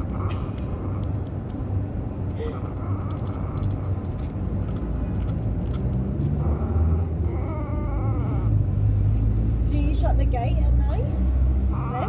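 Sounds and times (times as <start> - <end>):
steady low rumble: 0.0 - 12.0
kitten eating clicks: 0.4 - 6.9.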